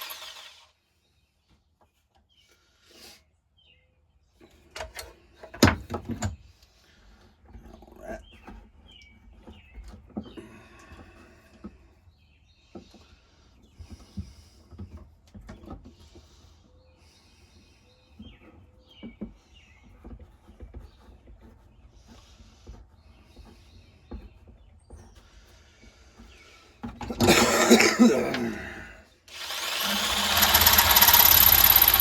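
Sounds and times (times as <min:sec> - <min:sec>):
power tool running: 0:00.0 - 0:00.7, 0:29.3 - 0:32.0.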